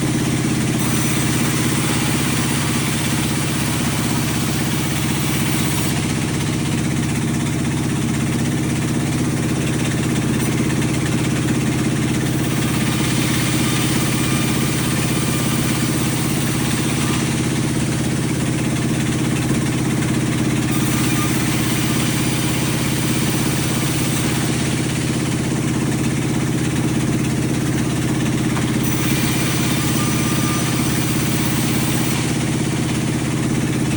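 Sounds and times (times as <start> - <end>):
sawmill machinery running: 0.0 - 33.9.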